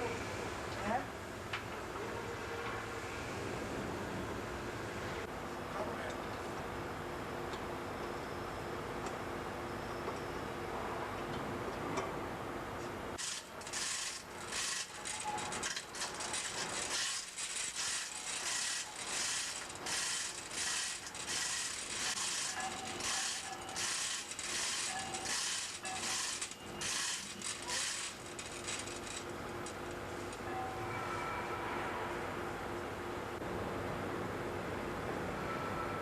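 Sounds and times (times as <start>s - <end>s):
ratcheting mechanism strokes: 13.2s - 29.8s.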